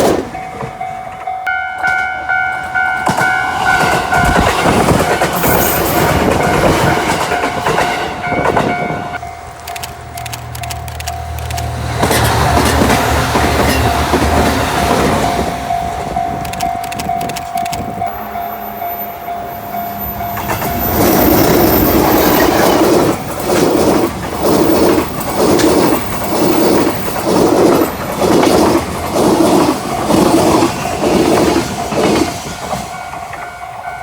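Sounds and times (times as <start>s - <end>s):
train rushing past: 0.0s - 34.0s
steady high tone: 0.4s - 23.9s
train wheels clattering over rail joints: 2.7s - 8.9s, 9.7s - 18.0s, 20.3s - 33.6s.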